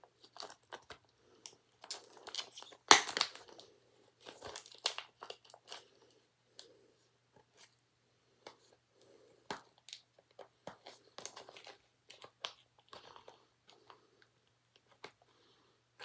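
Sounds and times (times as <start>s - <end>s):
plastic packaging crackling: 1.8s - 5.8s, 9.8s - 13.4s.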